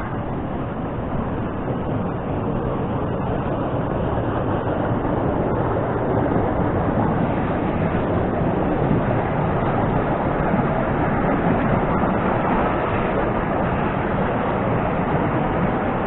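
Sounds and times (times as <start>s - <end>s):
river water rushing: 0.0s - 16.0s.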